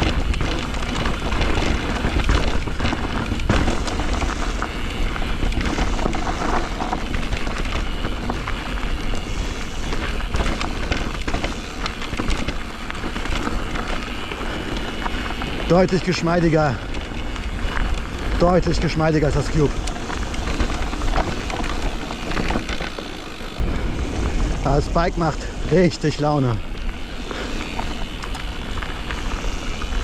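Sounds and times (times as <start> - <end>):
tyres rumbling on dirt: 0.0 - 30.0
wheels knocking on roots: 0.0 - 30.0
wind buffeting microphone: 16.5 - 25.9.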